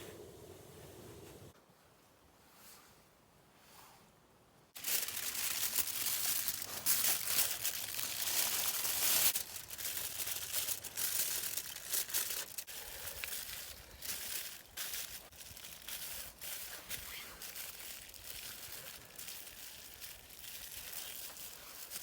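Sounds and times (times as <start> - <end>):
material crinkling and crackling: 4.7 - 22.0.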